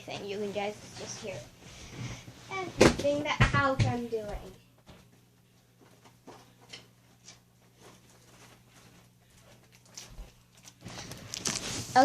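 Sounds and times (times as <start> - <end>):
low steady hum: 0.0 - 12.0.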